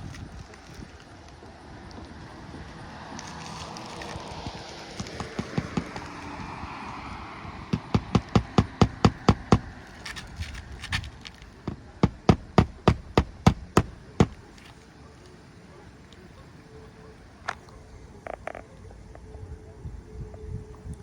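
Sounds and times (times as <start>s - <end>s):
hammer striking nail: 5.0s - 7.1s, 7.7s - 10.3s, 10.9s - 14.5s.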